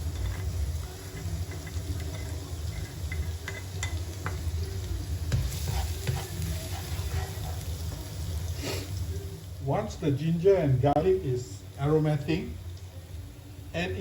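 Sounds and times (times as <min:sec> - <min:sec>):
garlic sizzling in hot oil: 0:00.0 - 0:14.0.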